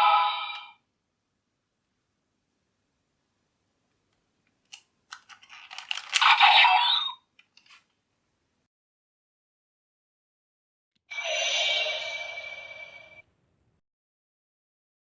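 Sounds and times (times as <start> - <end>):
plastic toy parts clicking: 4.6 - 6.5, 7.4 - 7.9.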